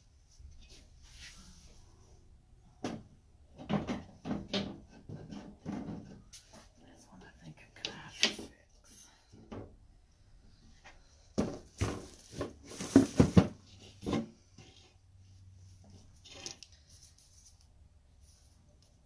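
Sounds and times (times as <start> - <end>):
wooden drawers knocking and scraping: 2.8 - 6.3, 11.4 - 14.8.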